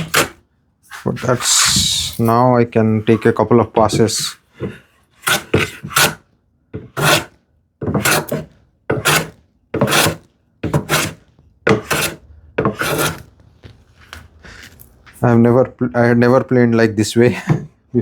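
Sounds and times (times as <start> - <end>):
hand plane scraping wood: 0.0 - 6.2, 6.8 - 13.3.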